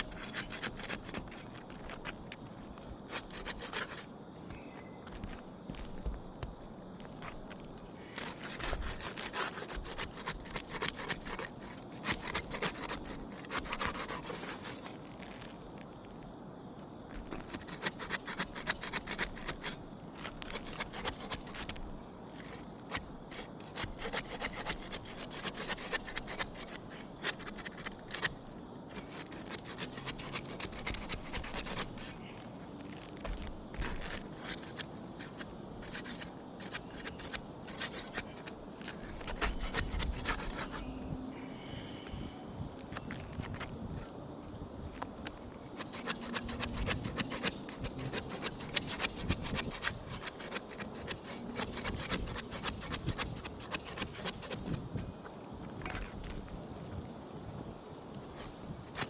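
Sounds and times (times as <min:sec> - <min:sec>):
roof shingles scraping and crackling: 0:00.0 - 0:04.1, 0:07.2 - 0:15.5, 0:17.1 - 0:32.3, 0:32.9 - 0:40.8, 0:45.8 - 0:54.8.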